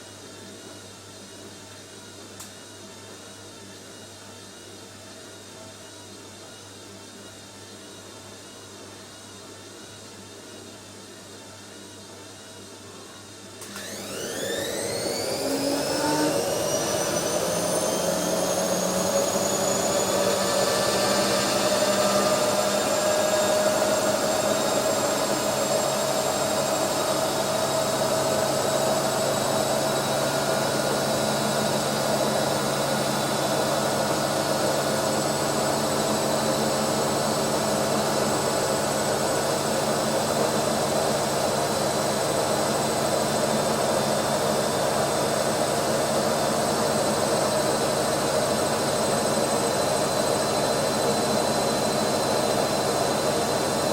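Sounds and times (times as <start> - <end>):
washing machine motor whine: 11.6 - 53.9.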